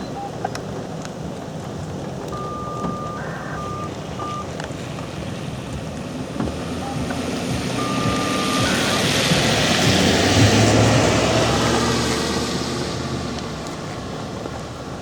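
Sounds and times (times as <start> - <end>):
high beep: 2.3 - 4.5, 6.8 - 9.1
vehicle passing: 2.4 - 14.8.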